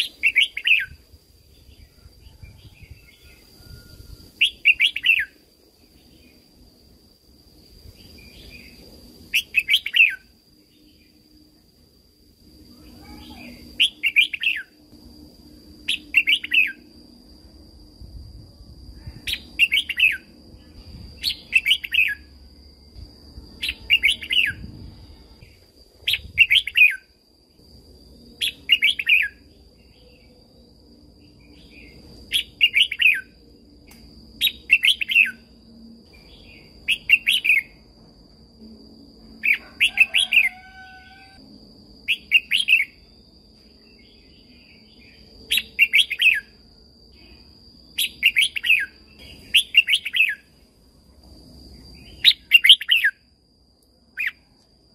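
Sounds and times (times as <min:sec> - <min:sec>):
bird whistling song: 0:00.0 - 0:01.0, 0:01.8 - 0:05.4, 0:08.2 - 0:11.0, 0:13.1 - 0:14.7, 0:15.9 - 0:16.9, 0:19.2 - 0:20.3, 0:21.2 - 0:22.3, 0:23.6 - 0:24.8, 0:28.4 - 0:29.5, 0:31.6 - 0:33.3, 0:34.4 - 0:35.5, 0:36.4 - 0:37.8, 0:42.1 - 0:43.0, 0:45.5 - 0:46.6, 0:48.0 - 0:50.5, 0:52.1 - 0:53.2
faint high-pitched tone: 0:10.6 - 0:19.2.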